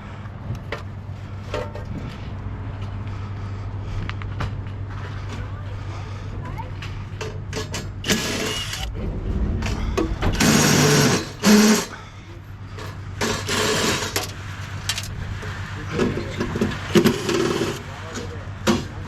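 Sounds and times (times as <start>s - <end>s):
steady low hum: 0.0s - 19.0s
small motor whirring and rattling: 7.5s - 9.4s, 10.3s - 12.0s, 12.9s - 15.7s.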